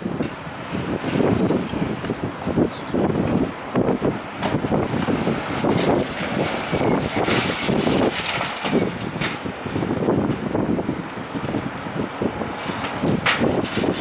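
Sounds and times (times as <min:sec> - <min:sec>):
heavy demolition machinery: 0:00.0 - 0:14.0
wind buffeting microphone: 0:00.0 - 0:14.0
masonry and debris crashing: 0:04.4 - 0:09.5.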